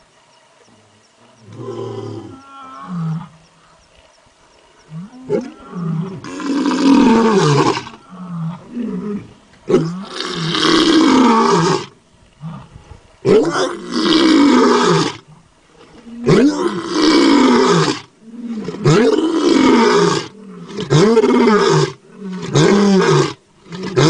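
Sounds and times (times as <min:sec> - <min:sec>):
tiger roaring: 0:04.9 - 0:24.0.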